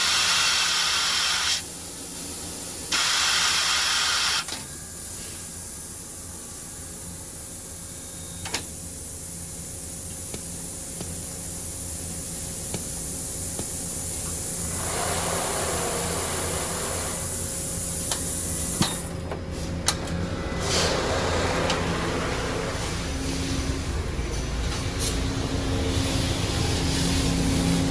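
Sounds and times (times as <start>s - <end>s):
compressed air hissing: 0.0s - 6.3s, 7.0s - 19.0s.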